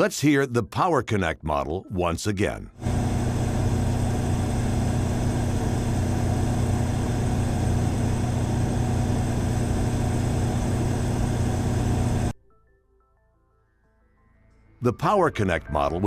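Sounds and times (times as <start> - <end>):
generator engine humming: 2.8 - 12.3.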